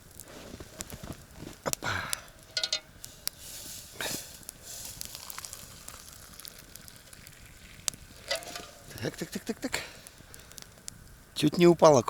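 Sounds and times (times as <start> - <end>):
campfire crackling: 0.0 - 12.0
brief hiss: 3.0 - 5.9.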